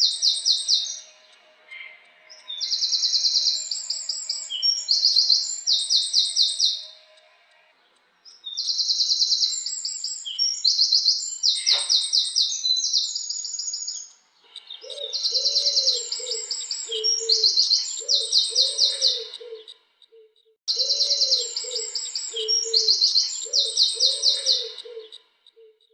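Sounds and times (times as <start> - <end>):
wren singing high trills: 0.0 - 19.8, 20.7 - 25.8
low repeated cooing call: 14.5 - 25.9.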